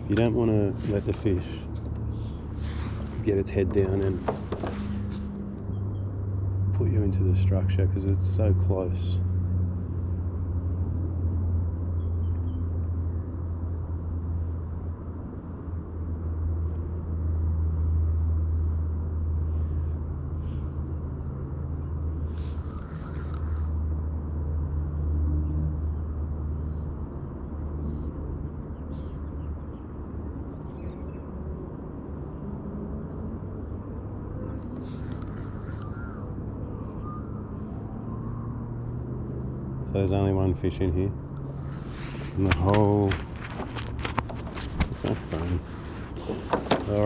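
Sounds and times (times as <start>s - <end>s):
low rumbling hum: 0.0s - 24.2s, 34.3s - 47.0s
faint bird calls: 21.8s - 23.9s, 34.4s - 38.7s.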